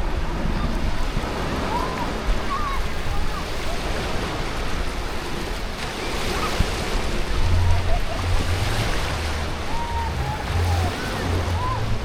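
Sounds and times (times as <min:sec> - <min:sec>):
water rushing and splashing: 0:00.0 - 0:12.0
distant voices calling out: 0:05.9 - 0:12.0.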